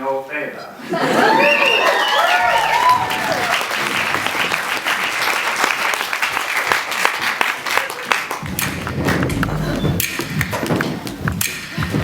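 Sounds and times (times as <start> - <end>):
audience applauding: 1.0 - 12.0
low steady rumble: 8.4 - 12.0.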